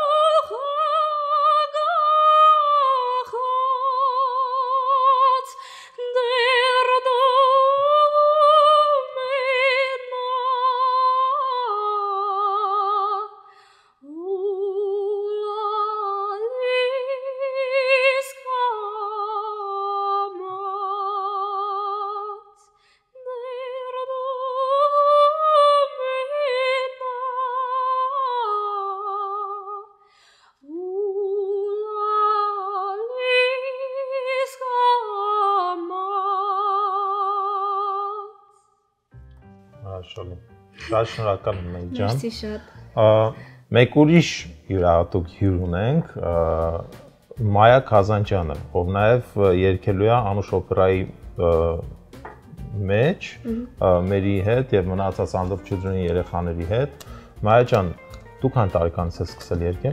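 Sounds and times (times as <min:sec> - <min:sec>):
woman singing with vibrato: 0:00.0 - 0:22.6, 0:23.2 - 0:30.0, 0:30.6 - 0:38.5, 0:40.8 - 0:42.7, 0:53.5 - 0:53.8.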